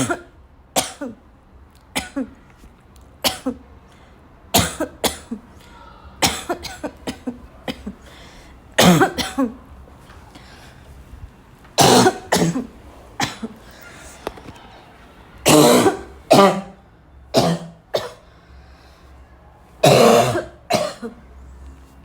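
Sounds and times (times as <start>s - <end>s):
woman coughing: 0.0s - 1.2s, 2.0s - 2.4s, 3.2s - 3.6s, 4.5s - 5.5s, 6.2s - 8.1s, 8.8s - 9.6s, 11.8s - 13.6s, 15.5s - 16.8s, 17.4s - 18.2s, 19.8s - 21.2s.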